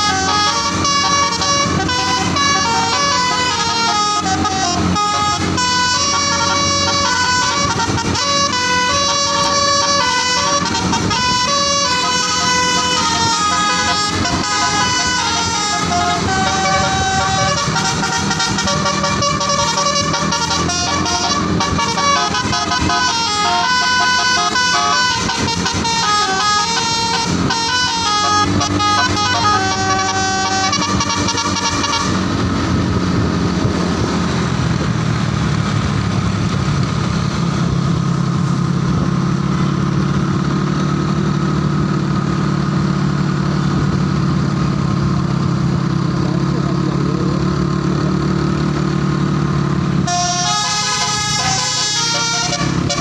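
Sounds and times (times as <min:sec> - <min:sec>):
bus melody horn: 0:00.0 - 0:34.4, 0:50.0 - 0:53.0
steady low drone: 0:00.0 - 0:45.2.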